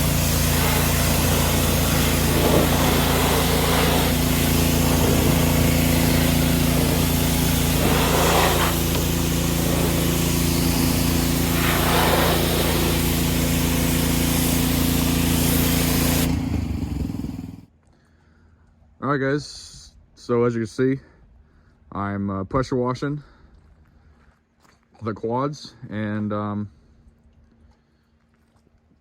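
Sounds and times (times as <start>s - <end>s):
hiss of high-pressure water jet: 0.0s - 16.6s
pressure washer motor hum: 0.0s - 17.6s.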